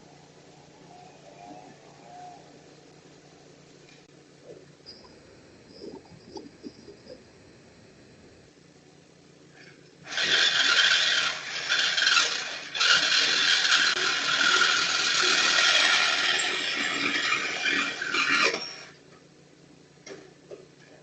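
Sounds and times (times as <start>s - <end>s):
power saw cutting exhaust pipe: 10.0s - 19.0s.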